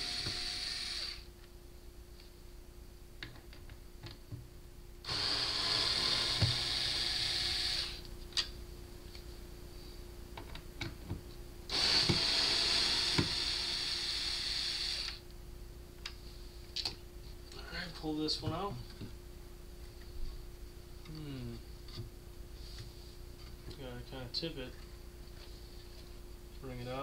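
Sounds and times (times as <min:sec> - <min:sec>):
power screwdriver running: 0:00.0 - 0:01.2, 0:05.1 - 0:08.0, 0:11.7 - 0:15.2.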